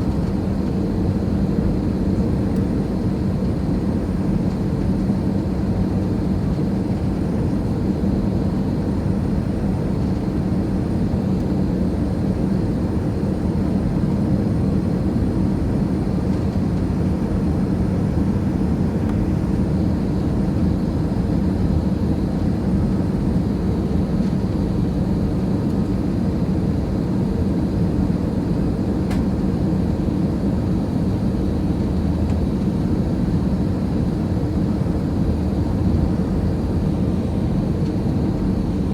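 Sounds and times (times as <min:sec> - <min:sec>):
airliner cabin drone: 0:00.0 - 0:38.9.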